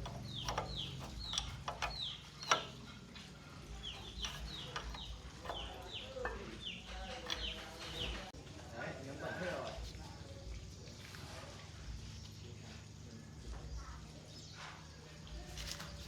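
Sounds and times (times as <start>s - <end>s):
hand tools clinking on metal: 0.0s - 8.3s
birds chirping: 0.0s - 16.0s.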